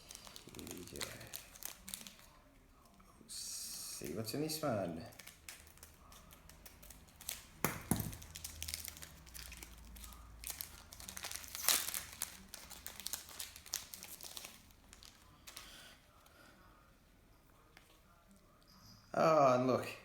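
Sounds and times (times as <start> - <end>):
wrapper tearing and crinkling: 0.0 - 3.0, 5.0 - 15.7.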